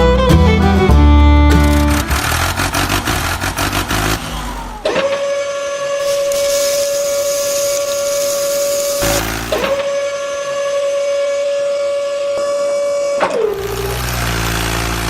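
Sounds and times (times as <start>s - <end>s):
small motor rattling and whining: 1.6s - 10.3s, 12.5s - 15.0s.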